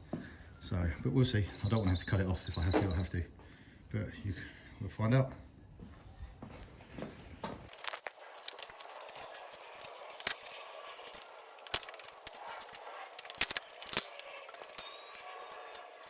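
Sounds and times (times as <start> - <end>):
screwdriver clicking and scraping: 7.7 - 16.0.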